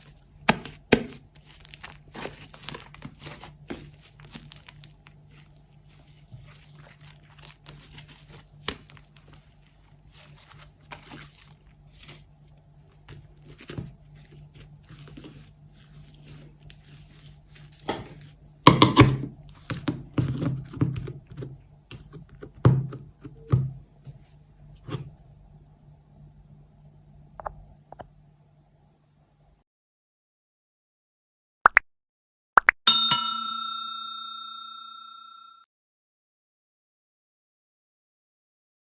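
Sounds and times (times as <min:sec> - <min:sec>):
slime squishing by hand: 0:00.0 - 0:12.3, 0:12.9 - 0:18.4.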